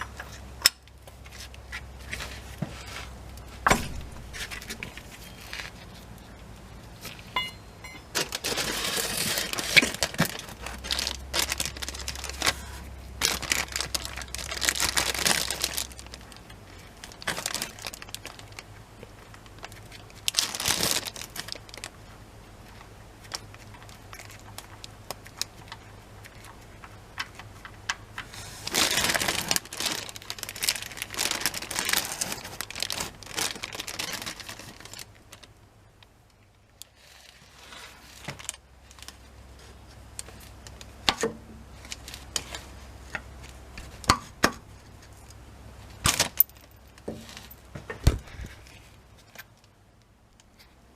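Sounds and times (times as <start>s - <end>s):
crinkling and rustling: 0.0s - 50.8s
faint low hum: 0.0s - 50.9s.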